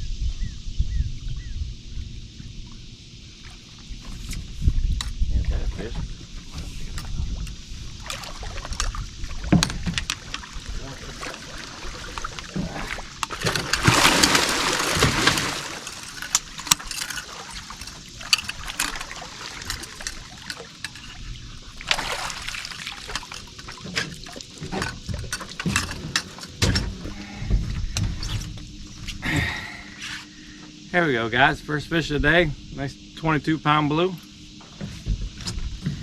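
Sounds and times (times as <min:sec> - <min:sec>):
water splashing: 0:08.0 - 0:25.9.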